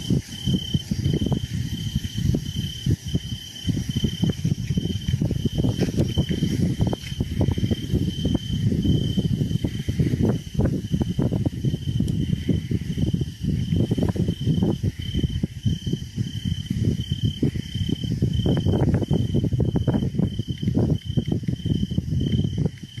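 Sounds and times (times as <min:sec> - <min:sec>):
cricket chirping: 0:00.0 - 0:23.0
low rumbling and crackling: 0:00.0 - 0:23.0.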